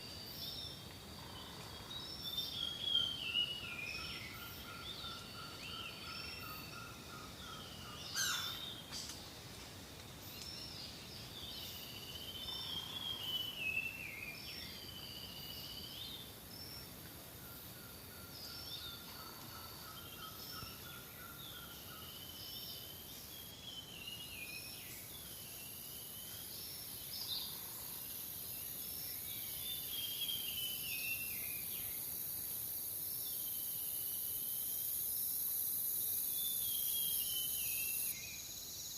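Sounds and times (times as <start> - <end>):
high insect drone: 0.0 - 38.9
birds calling and warbling: 0.6 - 9.2.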